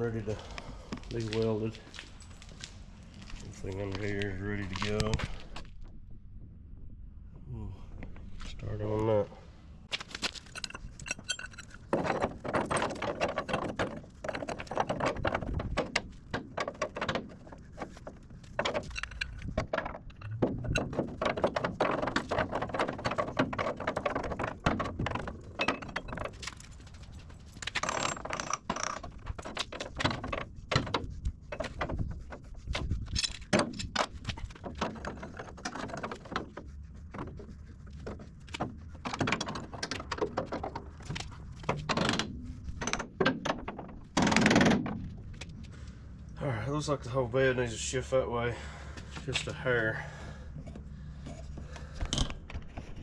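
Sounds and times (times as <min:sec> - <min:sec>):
metal tools clanking and rattling: 0:10.3 - 0:17.0, 0:18.5 - 0:30.3.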